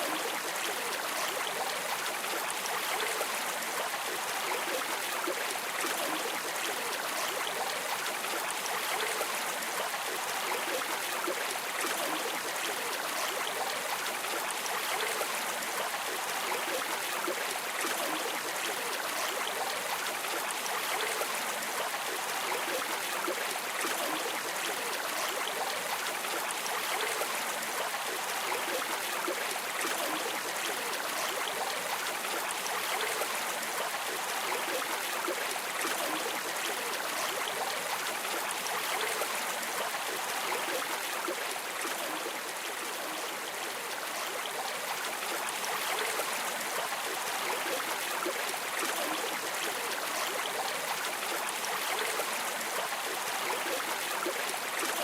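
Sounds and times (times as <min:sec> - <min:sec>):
river water flowing over stones: 0:00.0 - 0:55.0.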